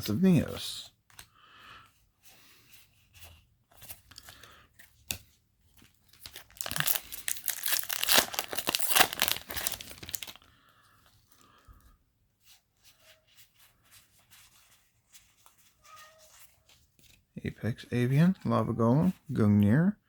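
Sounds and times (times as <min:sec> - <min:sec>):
faint handling rustles: 0:00.4 - 0:17.4
foil wrapper tearing and crinkling: 0:06.1 - 0:10.4.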